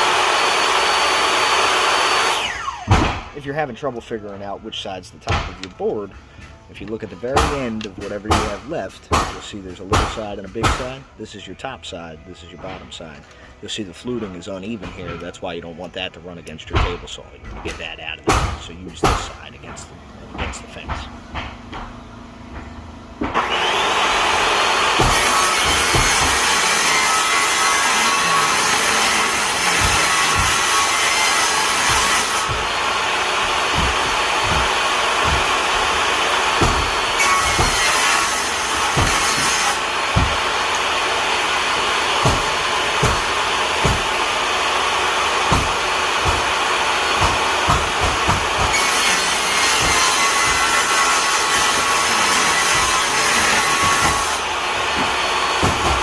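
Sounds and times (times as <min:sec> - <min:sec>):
table saw cutting wood: 0:00.0 - 0:04.6, 0:23.2 - 0:56.0.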